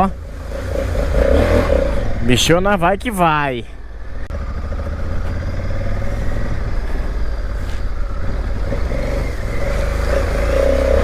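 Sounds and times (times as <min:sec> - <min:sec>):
motorcycle engine rumbling: 0:00.0 - 0:11.0.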